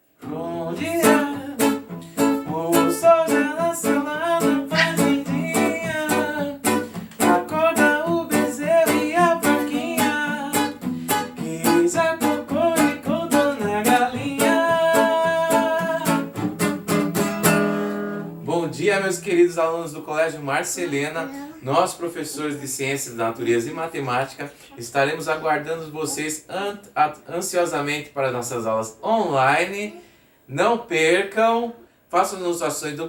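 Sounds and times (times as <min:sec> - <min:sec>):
person singing: 0:00.2 - 0:16.4
strummed ukulele: 0:00.2 - 0:18.5.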